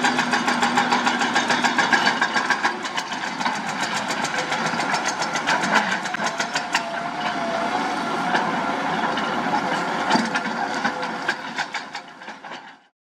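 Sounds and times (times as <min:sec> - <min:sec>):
diesel engine of heavy machinery: 0:00.0 - 0:12.9
rapid clicks and knocks: 0:00.1 - 0:06.8.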